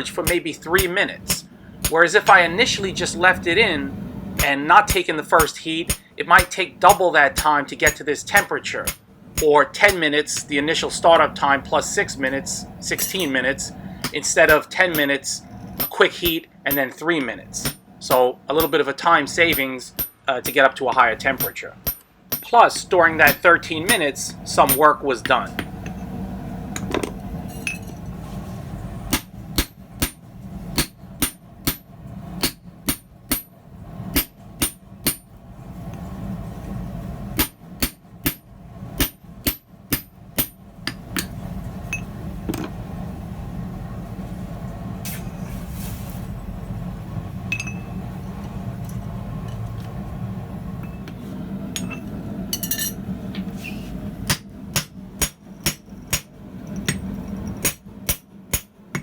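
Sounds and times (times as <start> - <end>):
hammer ringing on anvil: 19.4 - 22.6, 47.5 - 48.0.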